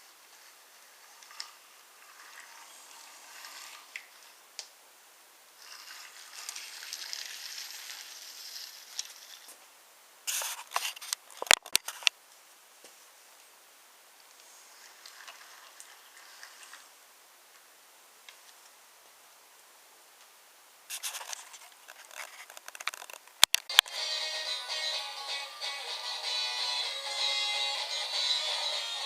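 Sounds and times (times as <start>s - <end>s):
wooden toy train rolling rattle: 0.3s - 4.3s, 5.6s - 9.5s, 14.8s - 16.9s, 20.9s - 23.3s.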